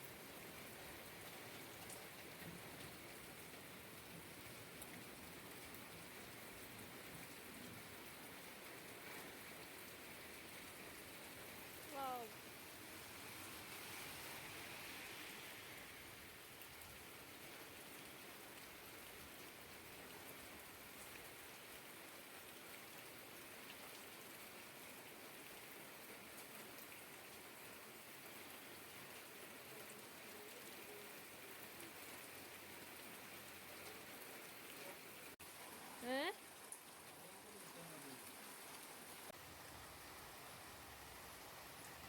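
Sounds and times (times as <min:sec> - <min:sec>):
rain falling steadily: 0:00.0 - 0:42.0
raindrop ticks: 0:01.6 - 0:03.7.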